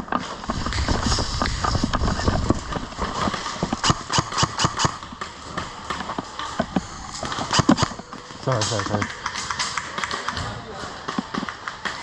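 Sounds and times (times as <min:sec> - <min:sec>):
sharp clicks and knocks: 0:00.0 - 0:12.0.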